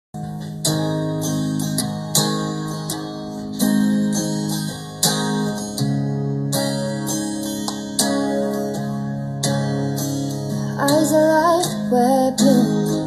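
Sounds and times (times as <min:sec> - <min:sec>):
acoustic guitar strumming chords: 0:00.2 - 0:13.0.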